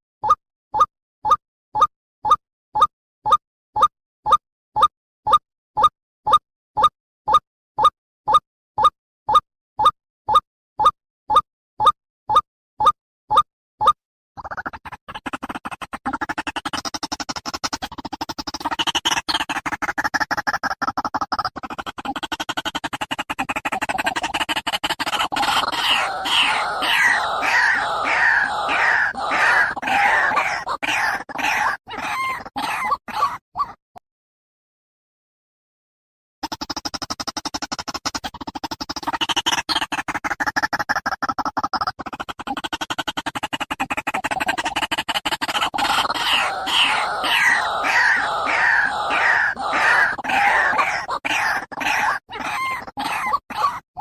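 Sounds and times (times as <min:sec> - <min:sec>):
waterhen calling harsh notes: 0:25.4 - 0:33.4, 0:45.8 - 0:53.8.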